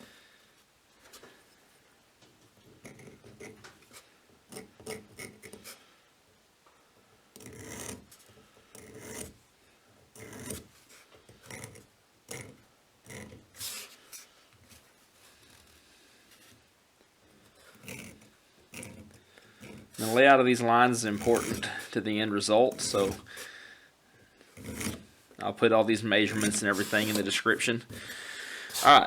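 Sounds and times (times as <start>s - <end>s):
marking tool scratching on steel: 2.8s - 5.8s, 7.4s - 9.4s, 10.1s - 14.0s, 17.4s - 23.4s, 24.6s - 25.1s, 26.2s - 27.7s, 28.7s - 29.0s.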